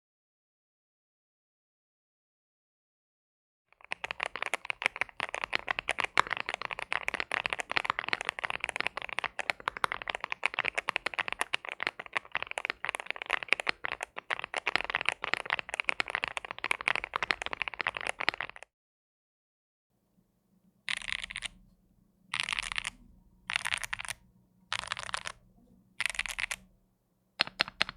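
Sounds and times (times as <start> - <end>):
fast mechanical keyboard typing: 3.8 - 18.6, 20.9 - 21.6, 22.3 - 25.4, 26.0 - 26.7, 27.4 - 27.9.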